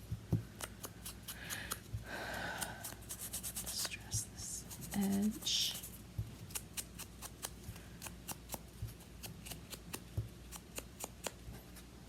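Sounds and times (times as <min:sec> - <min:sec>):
small clicks and taps on paper: 0:06.2 - 0:11.4.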